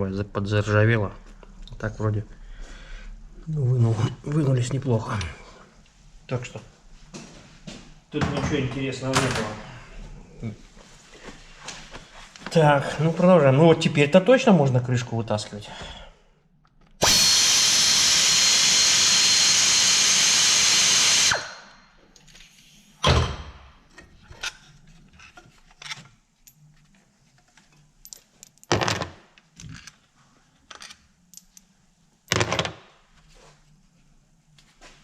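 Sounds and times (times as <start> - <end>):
power tool running: 17.0 - 21.8
metal clinks and knocks: 27.7 - 30.0.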